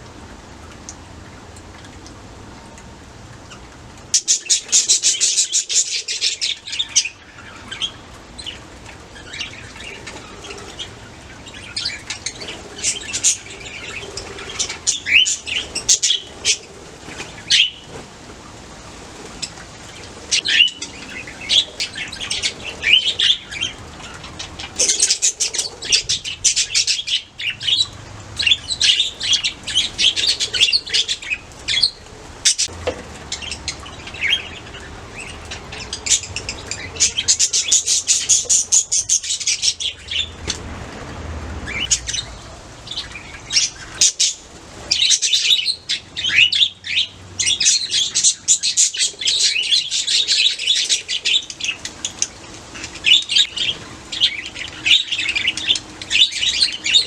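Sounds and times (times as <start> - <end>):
budgerigars chirping: 9.2 - 17.8, 33.3 - 40.6, 41.7 - 52.2.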